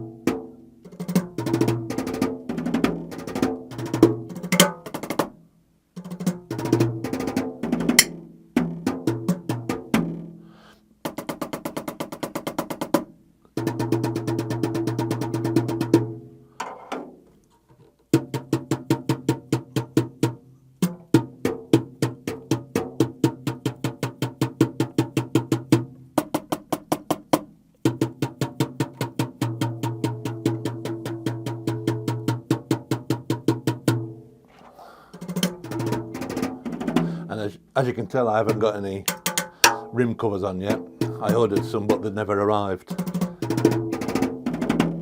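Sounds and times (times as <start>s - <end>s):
fast strokes on mesh drums: 34.6s - 37.3s, 38.3s - 42.2s.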